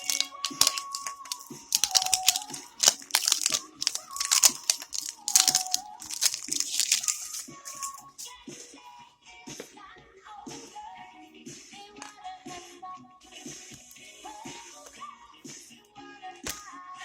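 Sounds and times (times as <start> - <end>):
wrapper crinkling and tearing: 0.0 - 8.2
faint background music: 0.0 - 17.0.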